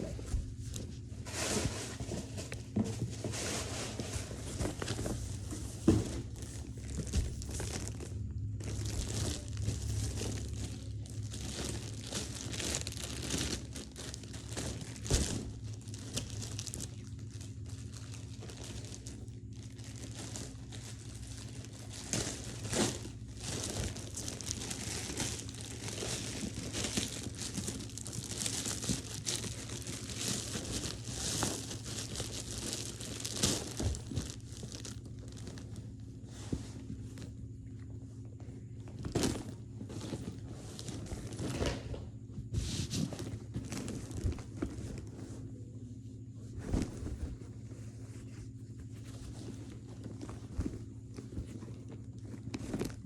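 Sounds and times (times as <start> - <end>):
steady low hum: 0.0 - 53.0
packaging crinkling and tearing: 4.4 - 36.0.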